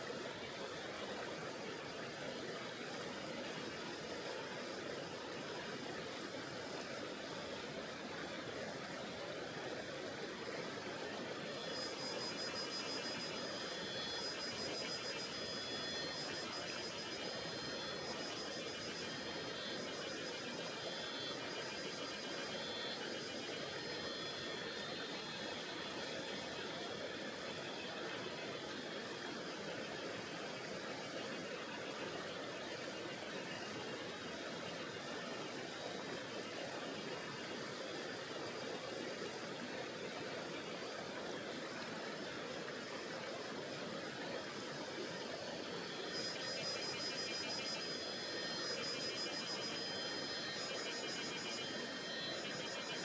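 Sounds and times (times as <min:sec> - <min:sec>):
high pulsing buzz: 0:11.4 - 0:28.4, 0:44.9 - 0:53.0
faint thin high tones: 0:45.5 - 0:53.0.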